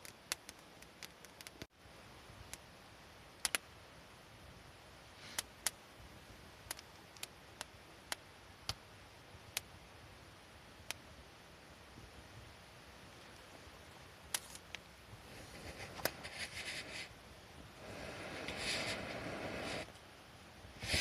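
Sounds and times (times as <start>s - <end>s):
sharp clicks or pops: 0.0s - 1.7s, 3.4s - 3.7s, 6.7s - 8.8s
faint steady hiss: 0.0s - 21.0s.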